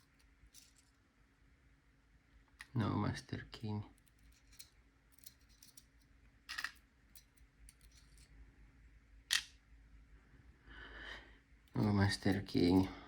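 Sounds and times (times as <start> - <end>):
small metal parts clicking: 0.0 - 1.0, 4.0 - 8.3.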